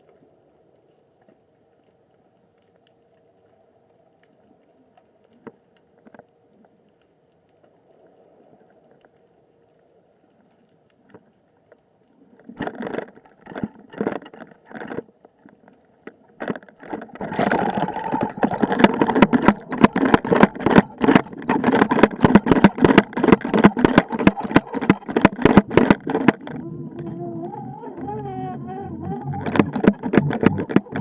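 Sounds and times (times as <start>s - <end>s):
knocks and rattles of fishing rig: 12.6s - 15.1s, 16.4s - 26.6s, 29.2s - 31.0s
water rushing: 17.2s - 31.0s.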